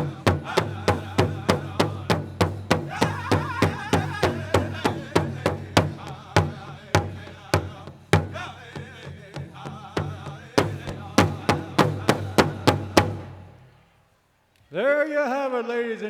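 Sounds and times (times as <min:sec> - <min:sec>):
men singing: 0:00.0 - 0:13.6
large drum beating: 0:00.0 - 0:13.8.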